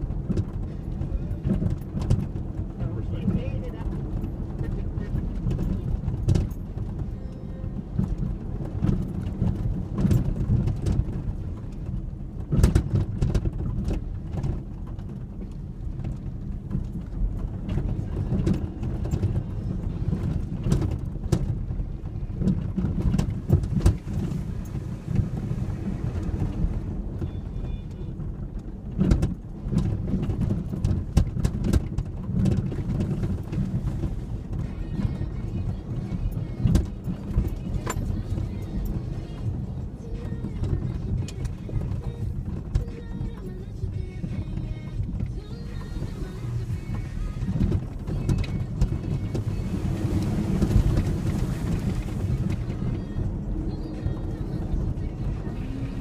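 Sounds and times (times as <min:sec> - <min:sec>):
truck engine rumble: 0:00.0 - 0:56.0
knocks and rattles: 0:08.0 - 0:25.5.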